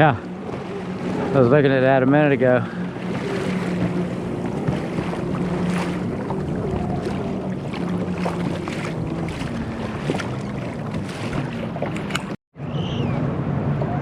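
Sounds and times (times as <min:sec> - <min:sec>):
low motor hum: 0:00.0 - 0:14.0.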